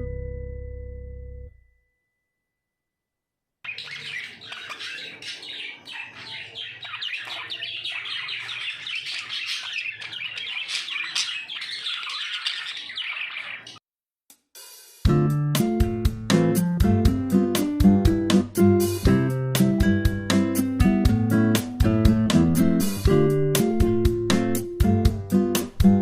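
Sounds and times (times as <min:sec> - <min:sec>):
budgerigars chirping and chattering: 0:03.7 - 0:13.8.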